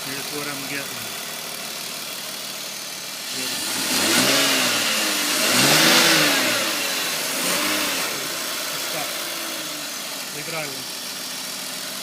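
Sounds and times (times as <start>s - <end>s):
car engine revving: 2.8s - 12.0s.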